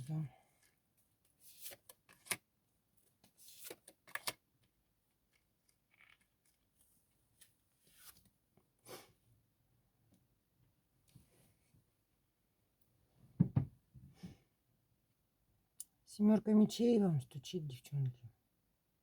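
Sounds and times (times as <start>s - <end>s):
cards clicking down: 3.6s - 4.4s.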